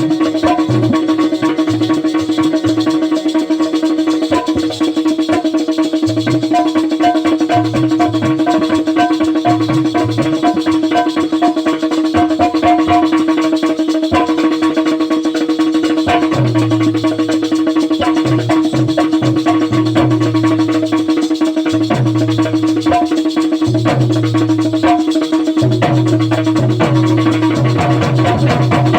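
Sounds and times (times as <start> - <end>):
held drone note: 0.0 - 13.5, 21.9 - 28.9
fast drum rhythm: 0.0 - 28.9.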